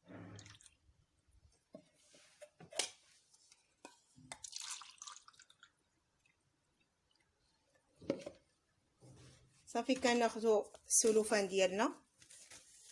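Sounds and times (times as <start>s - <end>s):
juice pouring into cups: 4.3s - 6.4s.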